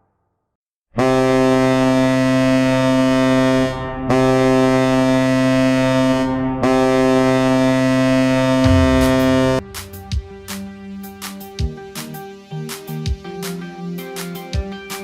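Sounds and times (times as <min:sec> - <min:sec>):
arena goal horn blasts: 0:01.0 - 0:09.7.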